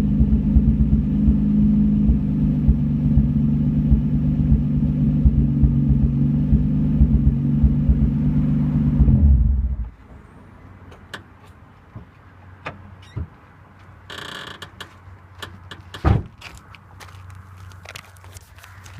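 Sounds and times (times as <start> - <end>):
car engine running with misfire: 0.0 - 9.9
loud thump: 0.0 - 9.9, 16.0 - 16.3.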